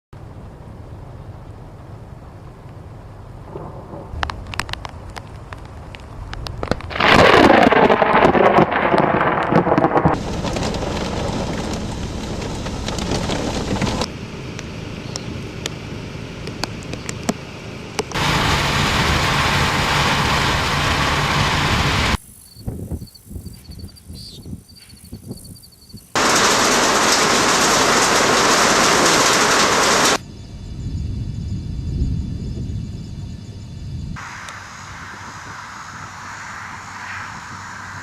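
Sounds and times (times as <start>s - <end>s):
rain: 0.2s - 14.1s, 18.1s - 22.2s, 26.2s - 30.2s
distant thunder: 3.4s - 4.8s, 6.9s - 13.9s
close thunder crack: 3.5s - 4.6s, 6.9s - 13.9s
faint high chirping: 22.2s - 26.2s.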